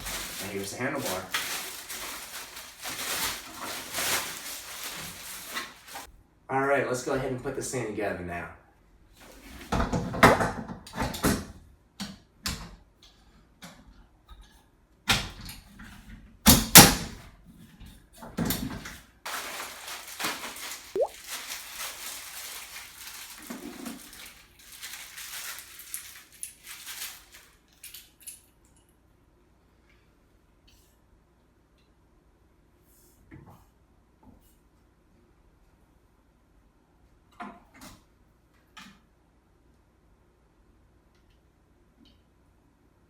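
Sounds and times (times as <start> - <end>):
rustling and scraping: 0.0 - 6.1.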